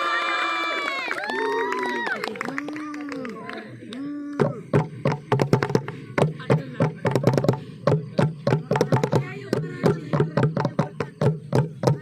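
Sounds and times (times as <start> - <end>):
percussion group drumming: 4.4 - 12.0.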